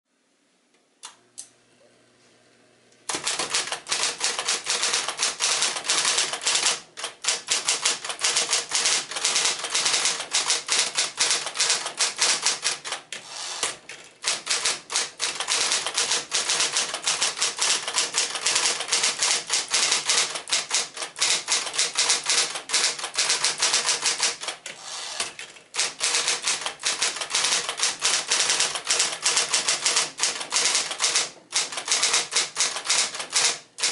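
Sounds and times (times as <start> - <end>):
typewriter clicks: 3.1 - 33.9
typewriter key strikes: 3.1 - 33.9
typewriter motor hum: 3.1 - 33.9.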